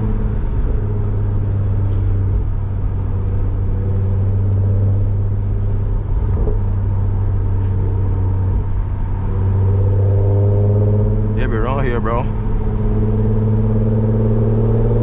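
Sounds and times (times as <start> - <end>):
car engine and exhaust droning: 0.0 - 15.0.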